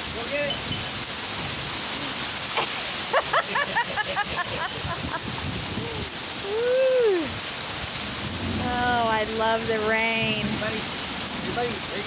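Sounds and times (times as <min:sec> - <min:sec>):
heavy rain pouring: 0:00.0 - 0:12.0.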